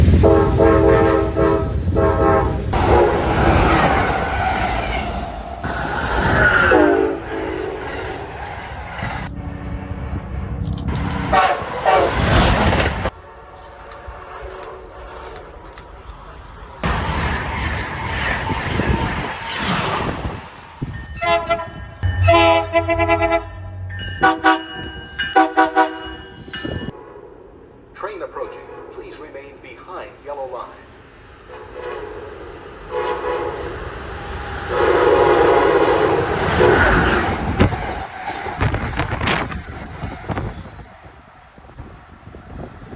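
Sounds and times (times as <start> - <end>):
train horn blasts: 0.0 - 3.9, 6.3 - 8.2, 9.2 - 12.5, 13.1 - 15.5, 21.2 - 27.4, 31.5 - 32.3, 32.9 - 33.9, 34.7 - 37.6
passing train rumble: 0.0 - 42.9
loud rushing rumble: 22.0 - 24.2.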